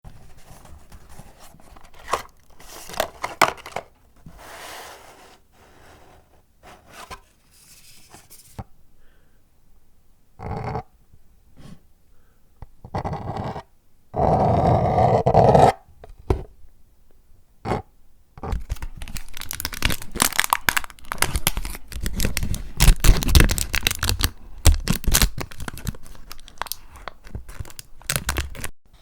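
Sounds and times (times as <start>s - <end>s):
paper packaging crinkling: 0.1s - 4.0s, 18.6s - 28.7s.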